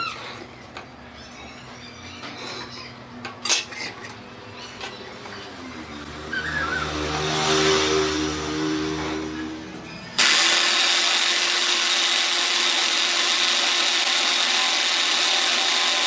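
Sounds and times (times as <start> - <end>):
electric motor humming: 10.2 - 16.0.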